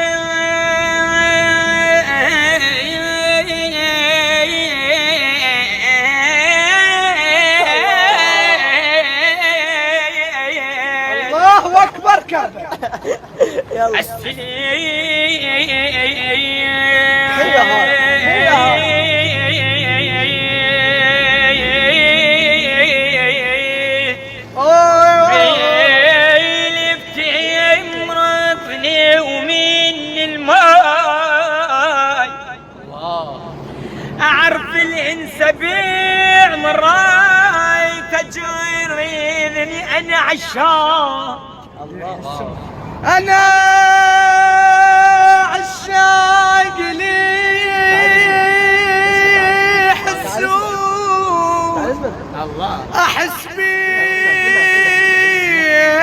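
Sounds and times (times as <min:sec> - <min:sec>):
person singing ornamented melody: 0:00.0 - 0:11.3, 0:14.4 - 0:30.2
person singing melismatic melody: 0:17.4 - 0:22.1.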